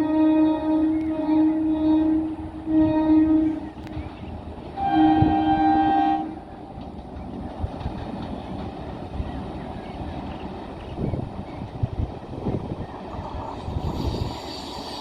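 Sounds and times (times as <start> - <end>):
locomotive horn blasts: 0.0 - 3.8, 4.8 - 6.5
train passing: 0.0 - 15.0
train wheel knocks: 6.8 - 9.0.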